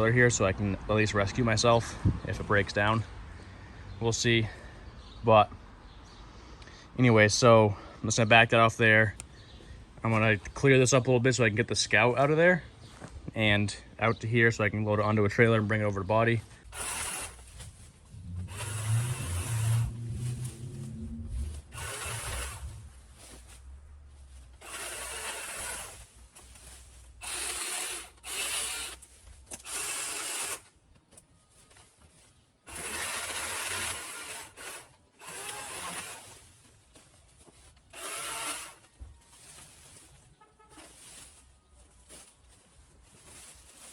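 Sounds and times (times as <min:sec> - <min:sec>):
scraping and rubbing: 0:16.7 - 0:30.6
low rumble: 0:17.7 - 0:24.6.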